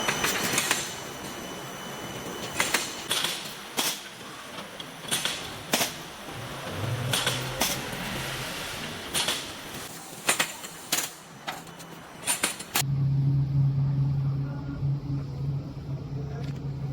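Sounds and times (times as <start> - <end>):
low machine hum: 12.8 - 16.9.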